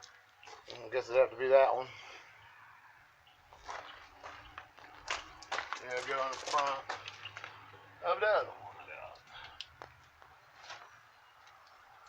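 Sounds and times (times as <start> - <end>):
wires rustling and clicking: 3.5 - 7.8, 9.1 - 12.0.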